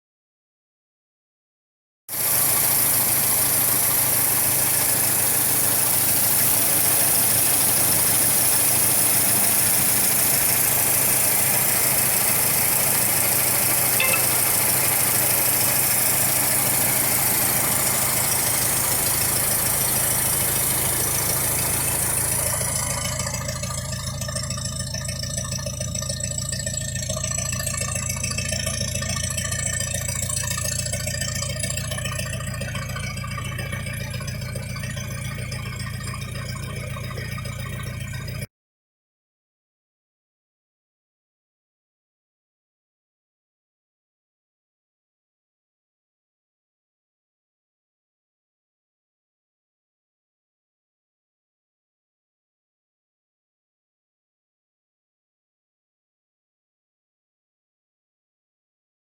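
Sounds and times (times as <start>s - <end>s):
loud hiss: 2.1s - 22.6s
car engine idling: 2.1s - 38.5s.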